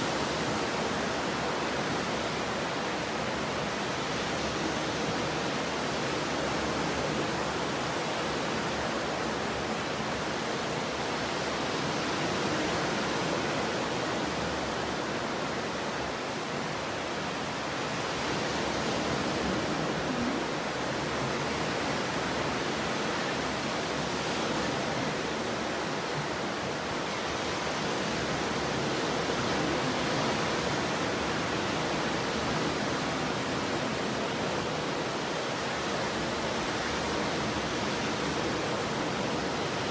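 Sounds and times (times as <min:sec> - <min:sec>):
ocean surf: 0:00.0 - 0:39.9.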